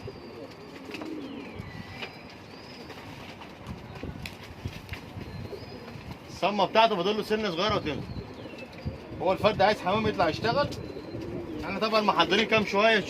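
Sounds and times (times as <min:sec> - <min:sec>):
pigeons cooing: 0:00.0 - 0:04.2, 0:04.8 - 0:13.0.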